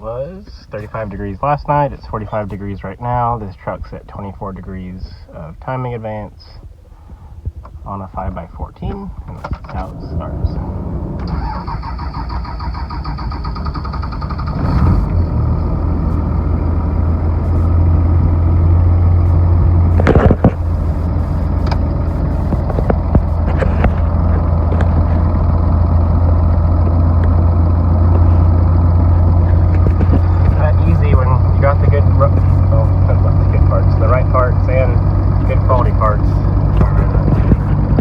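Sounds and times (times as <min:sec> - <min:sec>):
diesel engine droning: 0:08.9 - 0:38.0.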